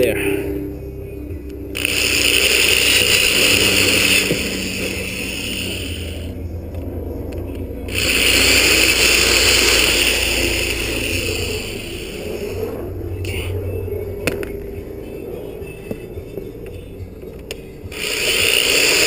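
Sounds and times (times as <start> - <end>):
power drill whining: 1.7 - 6.5, 7.9 - 12.6, 17.8 - 19.0.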